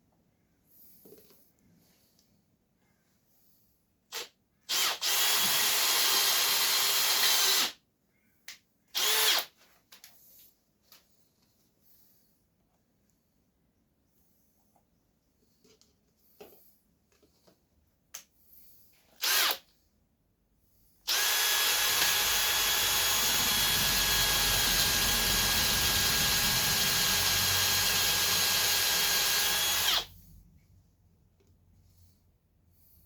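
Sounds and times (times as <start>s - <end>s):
power drill whining: 4.1s - 7.8s, 9.0s - 9.5s, 19.2s - 19.7s, 21.1s - 30.1s.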